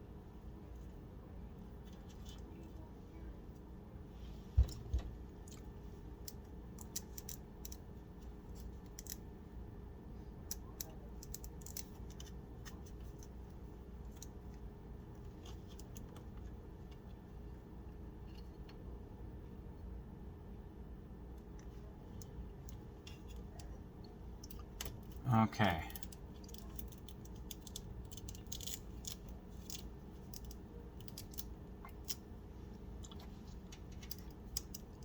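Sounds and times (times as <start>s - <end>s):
clicks and scratches of cables: 10.4s - 17.2s, 21.4s - 35.0s.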